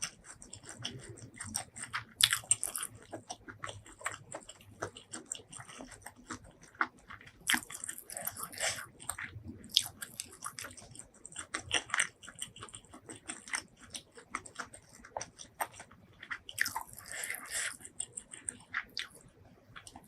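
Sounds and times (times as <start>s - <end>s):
chewing food: 0.0s - 20.0s.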